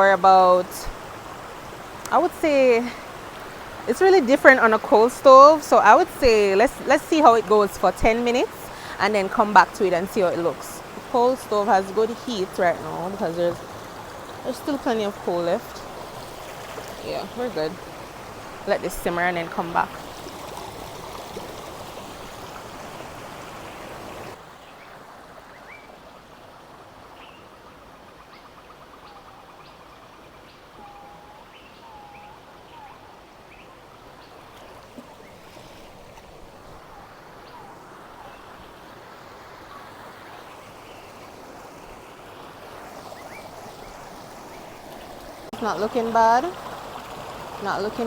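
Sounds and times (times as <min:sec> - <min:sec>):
birds chirping: 0:00.0 - 0:25.9, 0:42.8 - 0:46.8, 0:47.4 - 0:48.0
river water rushing: 0:00.0 - 0:48.0.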